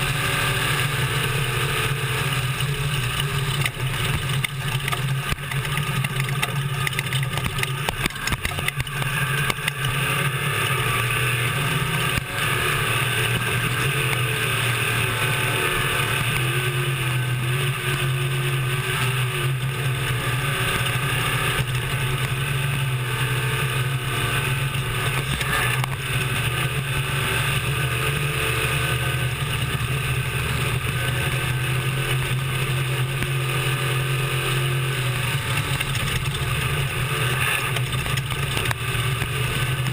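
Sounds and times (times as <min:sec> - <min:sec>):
truck engine running hard: 0:00.0 - 0:39.9
wind and road noise: 0:00.0 - 0:39.9
knocks and rattles: 0:02.6 - 0:09.9, 0:35.3 - 0:37.0, 0:37.6 - 0:39.9.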